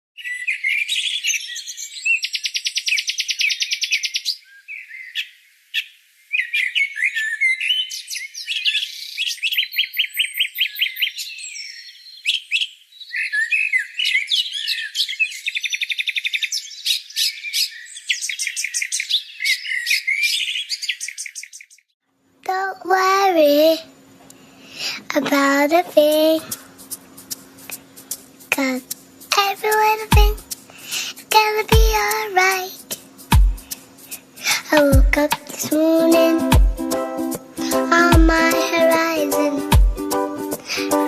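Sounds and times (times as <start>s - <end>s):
songbirds chirping and singing: 0.2s - 21.9s.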